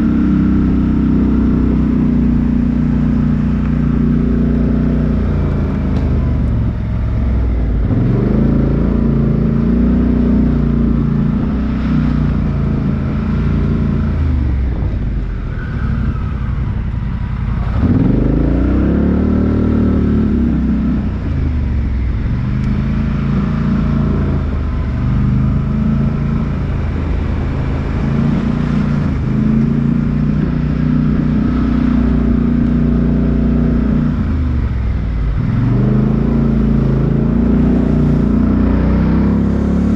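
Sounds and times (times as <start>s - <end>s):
off-road vehicle engine revving: 7.4s - 14.9s, 17.6s - 39.9s.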